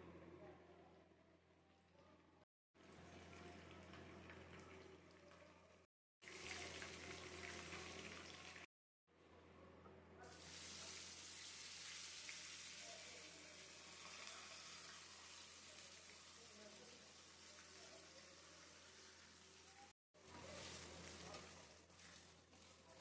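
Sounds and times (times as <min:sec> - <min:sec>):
food hissing in a pot: 0:10.3 - 0:22.4.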